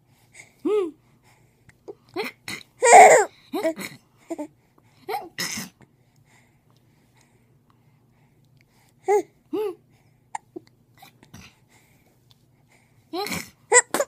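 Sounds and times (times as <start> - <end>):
baby hiccuping: 2.8 - 3.7, 13.2 - 14.0.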